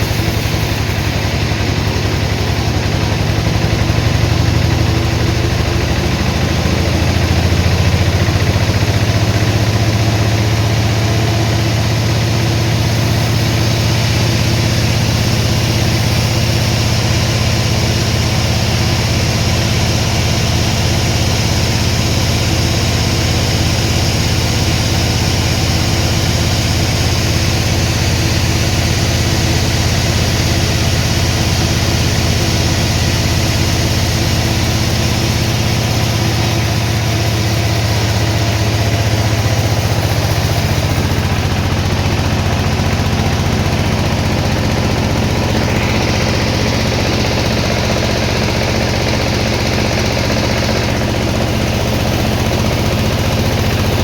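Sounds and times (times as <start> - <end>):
sawmill machinery humming: 0.0 - 54.0.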